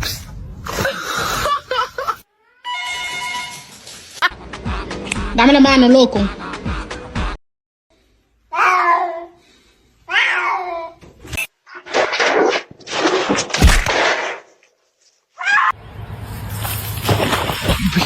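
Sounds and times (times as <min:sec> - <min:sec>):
cat meowing: 0:08.5 - 0:09.4, 0:10.1 - 0:11.0.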